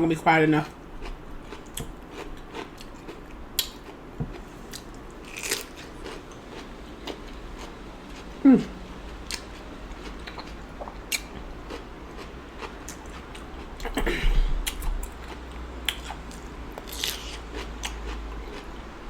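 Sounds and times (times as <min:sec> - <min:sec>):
wet chewing and lip smacks: 0:01.5 - 0:04.0, 0:10.1 - 0:13.9.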